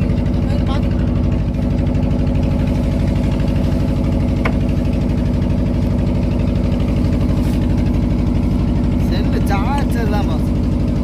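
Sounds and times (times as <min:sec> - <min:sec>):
boat diesel engine running: 0:00.0 - 0:11.0.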